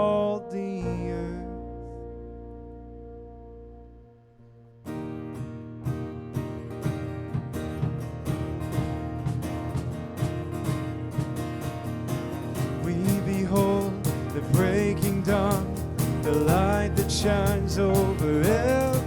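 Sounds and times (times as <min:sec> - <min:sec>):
acoustic guitar strumming: 0:00.0 - 0:19.0
band holding a chord: 0:12.8 - 0:19.0.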